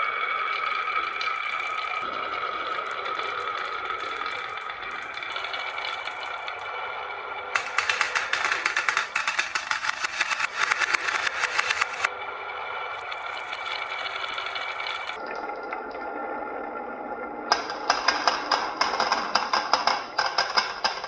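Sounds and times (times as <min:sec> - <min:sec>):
marbles clattering along track: 0:07.5 - 0:12.1, 0:17.5 - 0:21.0.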